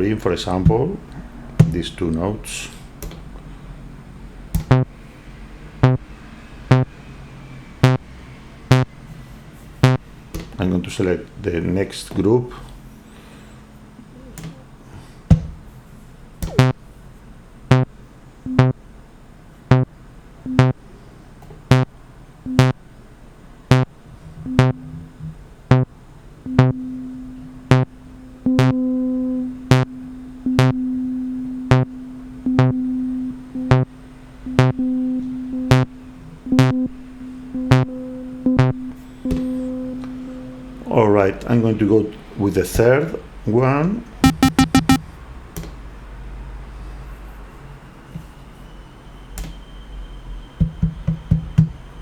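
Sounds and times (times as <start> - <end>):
held low synth tone: 4.6 - 4.9, 5.8 - 6.1, 6.7 - 7.0, 7.8 - 8.1, 8.7 - 9.0, 16.5 - 16.8, 22.5 - 22.8, 26.5 - 40.7, 44.2 - 45.0
short percussive synth notes: 4.6 - 4.9, 5.8 - 6.1, 6.7 - 7.0, 7.8 - 8.1, 8.7 - 9.0, 9.8 - 10.0, 16.5 - 16.8, 17.7 - 17.9, 22.5 - 22.8, 27.7 - 27.9, 34.6 - 34.8, 44.2 - 45.0
pulsing higher synth note: 6.7 - 7.0, 44.2 - 45.0.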